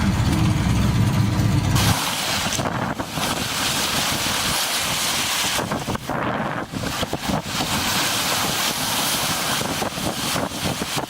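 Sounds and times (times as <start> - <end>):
low rumble: 0.0 - 8.6
water noise: 0.0 - 11.0
wind blowing across microphone: 0.0 - 11.0.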